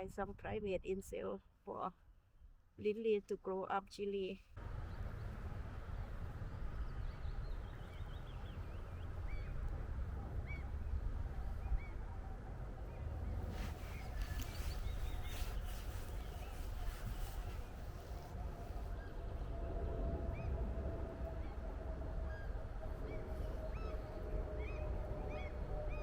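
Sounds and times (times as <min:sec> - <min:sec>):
wind rumble on microphone: 0:00.0 - 0:01.2, 0:04.6 - 0:26.0
scratchy rustling: 0:13.4 - 0:18.8
bird chirping: 0:13.6 - 0:17.6.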